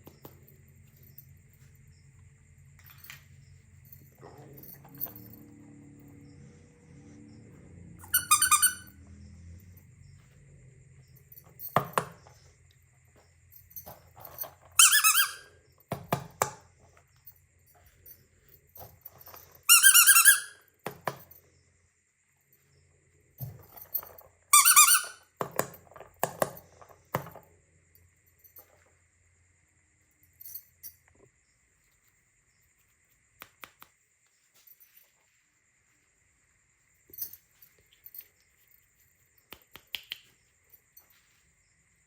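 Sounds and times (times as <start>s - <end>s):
squeaky toy squeaking: 8.0s - 9.0s, 14.8s - 15.5s, 19.7s - 20.6s, 24.5s - 25.2s.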